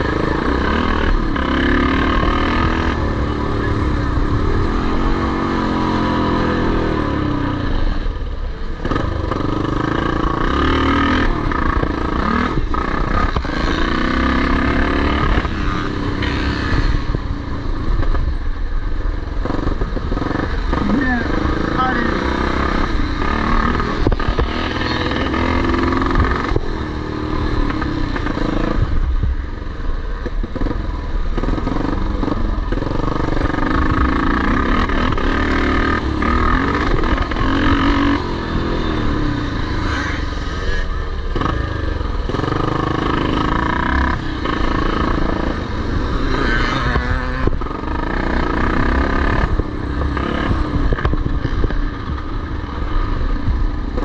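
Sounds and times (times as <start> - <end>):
motocross motorcycles revving: 0.0 - 54.0.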